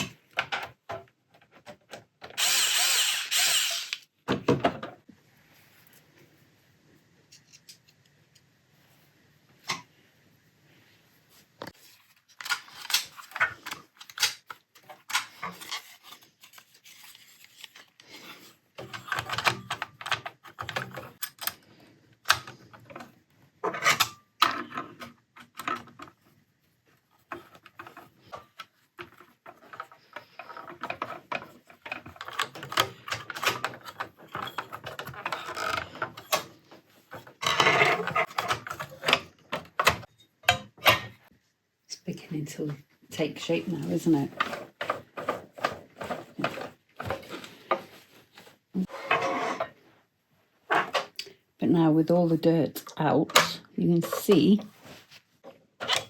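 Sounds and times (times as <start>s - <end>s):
plastic and metal parts clicking: 12.3s - 18.1s, 27.2s - 41.2s.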